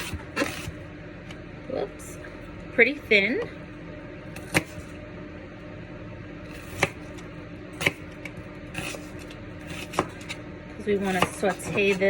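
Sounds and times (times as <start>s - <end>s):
knife slicing onion on board: 4.4s - 4.9s, 6.5s - 7.2s, 7.8s - 10.4s, 11.0s - 12.0s.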